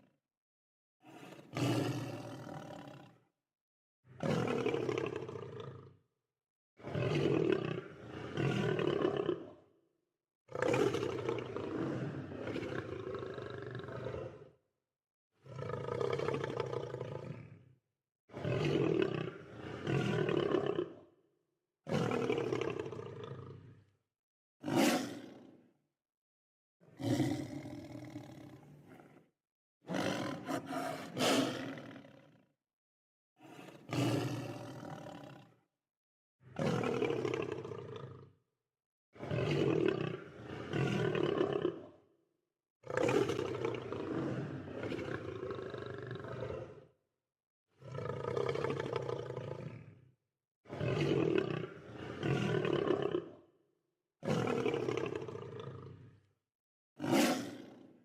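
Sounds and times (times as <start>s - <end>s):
lion roaring: 15.5s - 17.6s, 24.6s - 25.4s, 26.9s - 29.3s, 29.9s - 32.2s, 33.4s - 35.5s, 47.8s - 50.0s, 54.2s - 56.1s, 57.0s - 57.8s.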